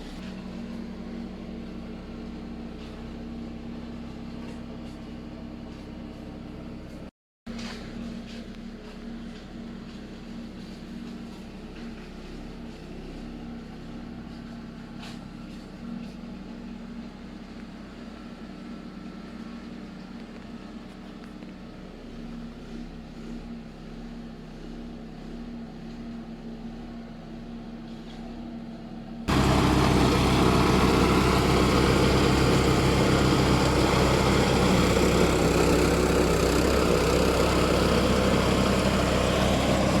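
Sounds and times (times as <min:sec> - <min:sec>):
walk-behind tractor engine running: 0:29.3 - 0:40.0.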